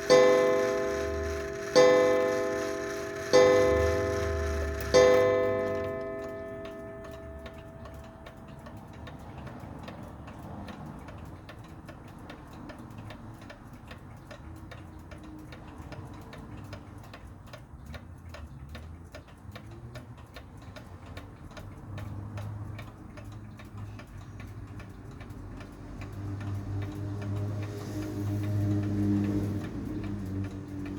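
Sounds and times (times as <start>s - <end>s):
clock striking: 0.0s - 10.8s, 24.8s - 30.9s
clock ticking: 0.0s - 30.9s.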